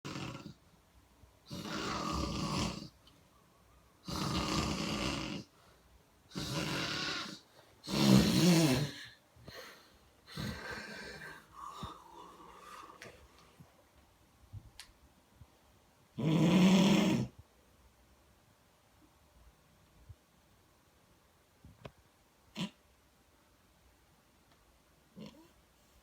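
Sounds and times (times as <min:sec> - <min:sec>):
person snoring: 0:00.0 - 0:00.6, 0:01.5 - 0:03.0, 0:04.0 - 0:05.5, 0:06.3 - 0:13.2.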